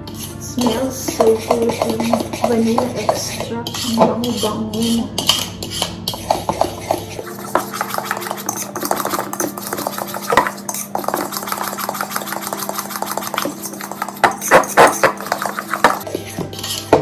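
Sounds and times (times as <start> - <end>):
utensil stirring batter in bowl: 0.0 - 17.0.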